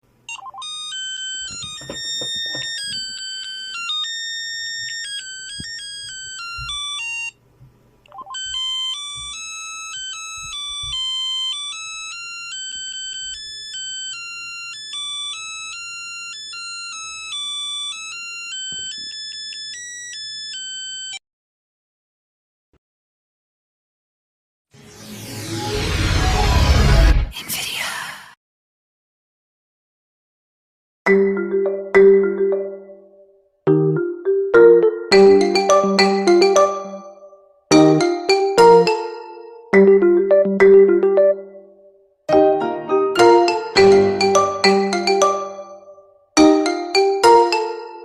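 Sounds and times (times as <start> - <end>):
smartphone ringtone melody: 0.3 - 7.4, 8.1 - 21.2, 31.1 - 48.0.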